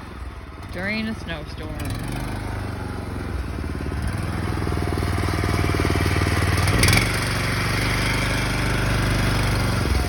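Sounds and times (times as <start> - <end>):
go-kart engine revving: 0.0 - 10.0.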